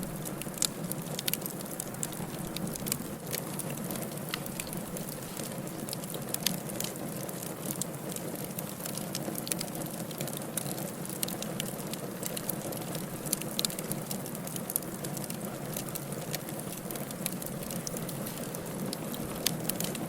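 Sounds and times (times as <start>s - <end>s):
firewood burning with crackles: 0.0s - 20.0s.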